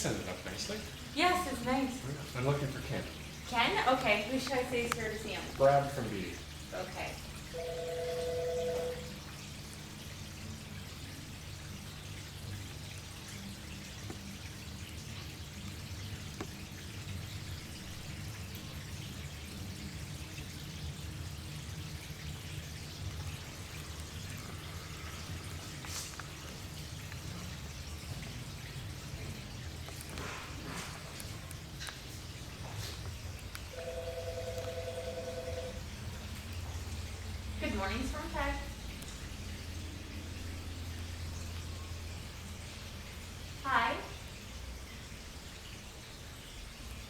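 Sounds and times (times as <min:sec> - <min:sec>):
water falling and splashing: 0:00.0 - 0:07.5, 0:09.3 - 0:33.7.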